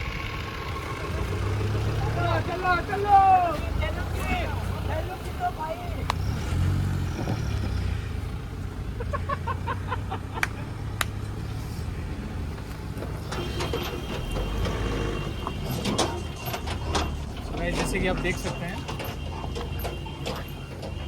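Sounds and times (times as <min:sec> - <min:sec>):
car engine humming: 0:00.0 - 0:21.0.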